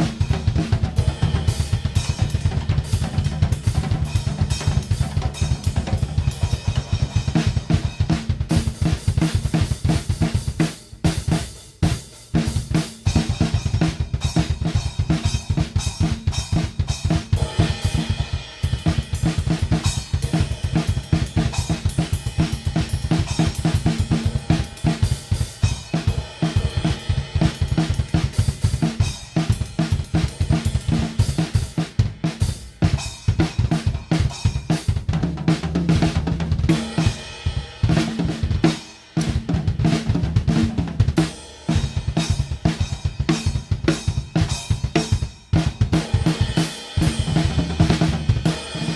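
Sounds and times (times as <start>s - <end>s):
drum kit groove: 0.0s - 48.9s.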